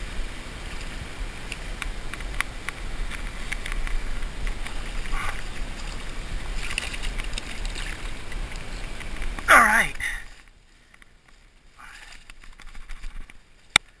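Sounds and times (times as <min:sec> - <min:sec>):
wind rumbling on microphone: 0:00.0 - 0:10.4
splash: 0:00.0 - 0:10.5, 0:11.8 - 0:13.4
river water running: 0:00.0 - 0:14.0.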